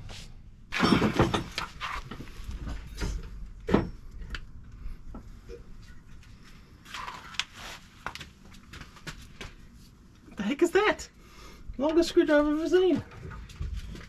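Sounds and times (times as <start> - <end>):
metal tools clinking: 0.7 - 2.0.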